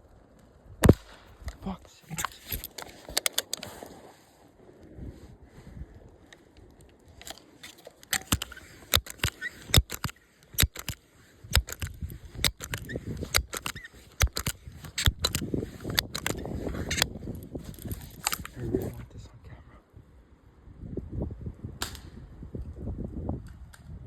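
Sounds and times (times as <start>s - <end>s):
handling clicks and snaps: 0.3s - 3.9s, 6.3s - 18.6s.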